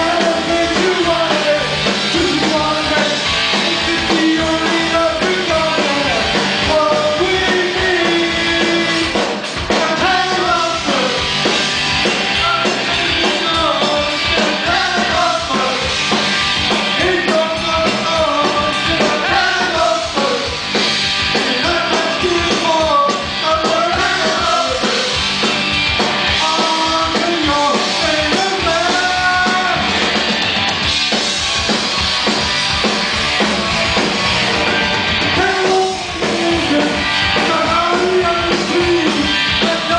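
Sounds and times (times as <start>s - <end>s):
person singing: 0.0s - 11.3s, 12.3s - 15.9s, 17.0s - 20.6s, 21.4s - 25.2s, 26.3s - 29.9s, 35.3s - 39.9s
bass guitar: 0.0s - 39.9s
distorted electric guitars: 0.0s - 39.9s
drums: 0.0s - 39.9s.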